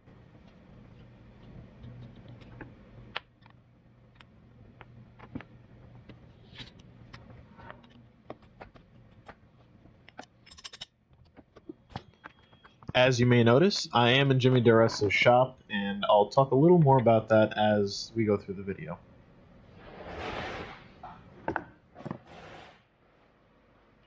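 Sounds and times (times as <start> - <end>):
low steady hum: 0.0 - 22.4
small metal parts clinking: 10.2 - 10.9.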